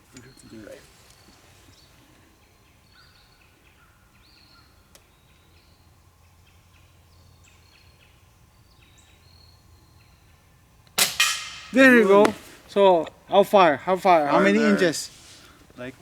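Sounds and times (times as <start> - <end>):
faint bird chirps: 0.0 - 10.5
low steady hum: 0.0 - 16.0.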